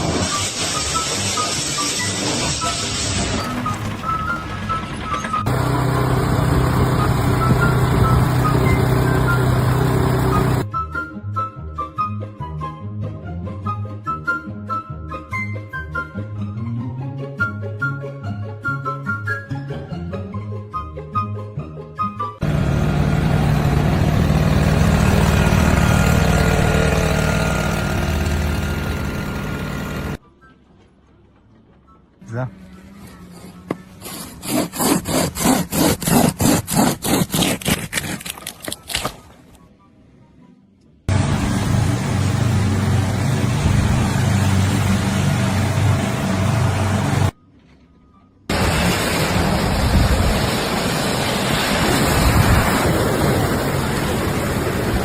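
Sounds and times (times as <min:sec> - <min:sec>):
engine running loud and low: 0:05.4 - 0:10.7, 0:22.4 - 0:30.2, 0:41.1 - 0:47.4, 0:48.5 - 0:55.0.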